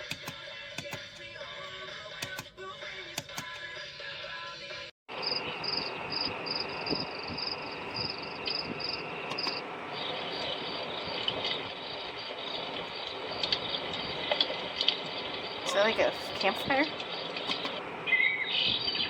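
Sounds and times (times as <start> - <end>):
cricket chirping through speaker: 5.1 - 19.0
steady speaker hiss: 5.1 - 19.0.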